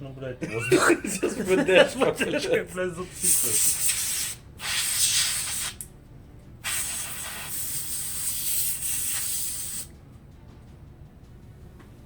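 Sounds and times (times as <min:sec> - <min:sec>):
compressed air can hissing: 0:03.1 - 0:05.9, 0:06.6 - 0:09.9.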